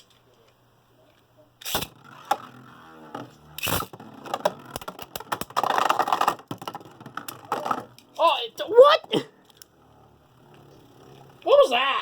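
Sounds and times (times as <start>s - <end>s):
spinning tops whirring: 1.6s - 8.2s
spinning tops clicking and knocking: 3.6s - 8.1s.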